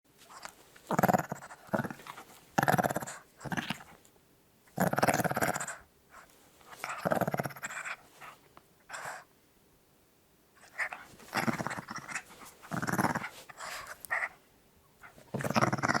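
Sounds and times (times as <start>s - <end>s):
small dog growling: 0.3s - 4.0s, 4.7s - 5.9s, 6.8s - 8.0s, 10.6s - 14.4s, 15.0s - 16.0s.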